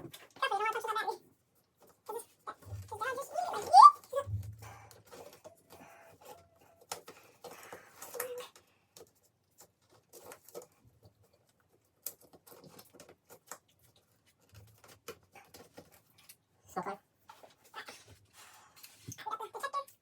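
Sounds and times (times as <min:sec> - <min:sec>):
small parts clicking and tapping: 0:04.0 - 0:16.4.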